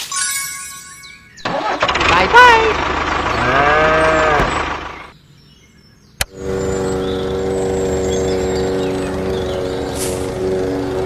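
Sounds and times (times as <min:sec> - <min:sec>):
steady engine hum: 0:01.4 - 0:05.2, 0:06.2 - 0:11.0.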